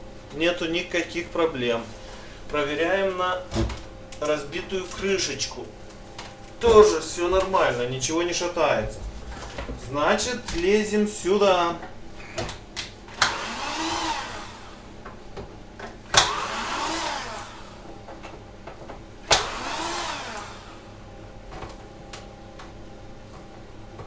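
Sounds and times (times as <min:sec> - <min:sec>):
power screwdriver whirring: 0:13.2 - 0:14.8, 0:16.2 - 0:17.8, 0:19.3 - 0:20.8.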